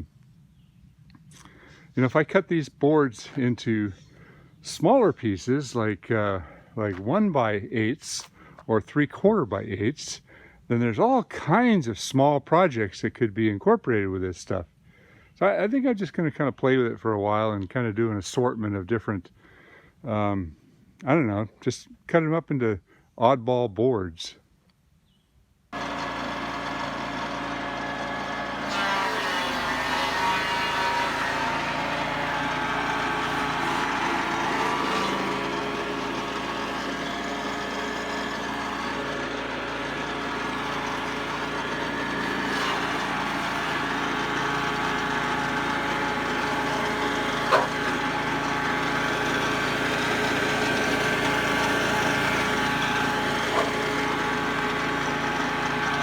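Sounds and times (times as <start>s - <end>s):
sawmill engine running: 25.8s - 56.0s.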